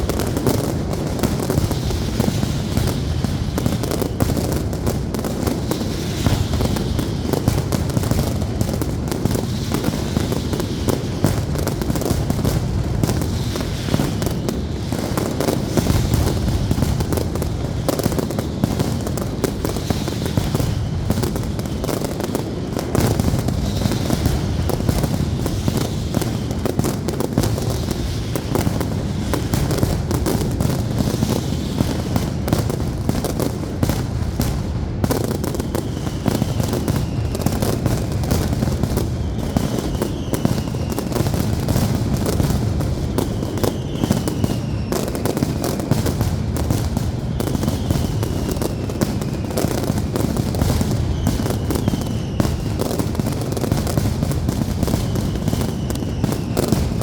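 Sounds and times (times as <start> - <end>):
fireworks bangs and crackling: 0.0 - 57.0
falling whistles: 35.5 - 42.4, 43.1 - 46.0, 47.3 - 53.3, 54.8 - 57.0.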